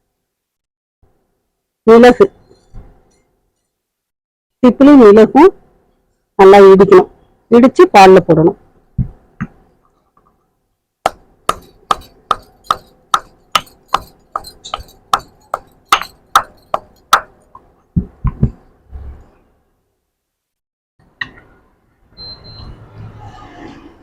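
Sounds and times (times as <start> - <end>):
pestle striking in a mortar: 11.0 - 18.6.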